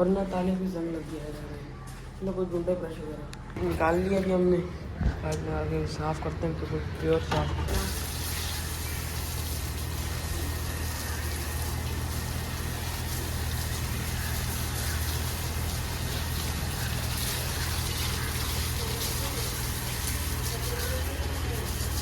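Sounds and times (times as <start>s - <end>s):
steady low hum: 0.0s - 22.0s
hose spraying water: 7.7s - 22.0s.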